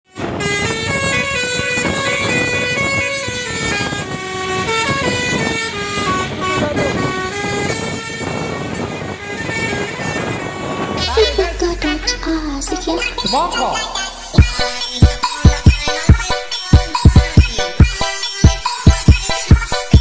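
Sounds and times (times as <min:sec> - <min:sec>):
bus air horn playing a tune: 0:00.1 - 0:11.6.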